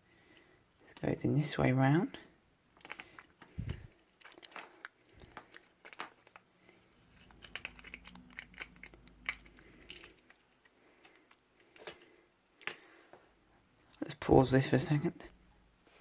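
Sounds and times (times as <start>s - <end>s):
small plastic parts clicking: 2.8s - 12.9s.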